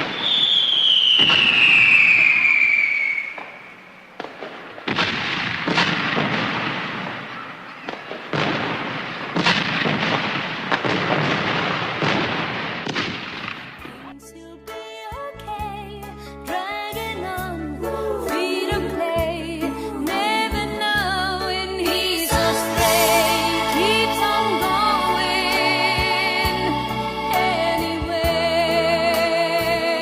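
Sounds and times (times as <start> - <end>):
firework falling whistle: 0.0 - 5.2, 22.3 - 24.8
firework bangs: 0.0 - 14.1, 22.3 - 24.9
fireworks crackling: 0.0 - 14.1, 21.9 - 28.4
music: 14.0 - 30.0.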